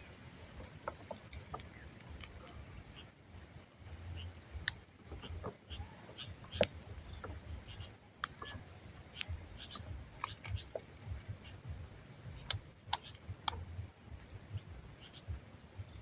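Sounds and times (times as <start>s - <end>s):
sharp clicks: 4.6s - 10.8s, 12.2s - 13.8s.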